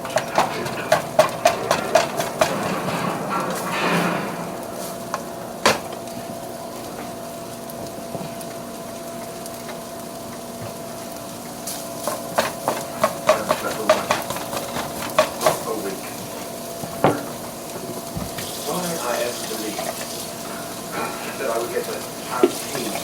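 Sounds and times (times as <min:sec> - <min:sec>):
utensil stirring in a pot: 0:00.0 - 0:04.1, 0:08.2 - 0:23.0.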